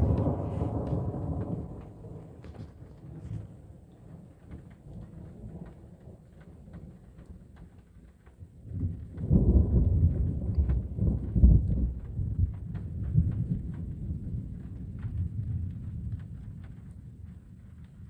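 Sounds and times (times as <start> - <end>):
thunder rumbling: 0.0 - 3.3.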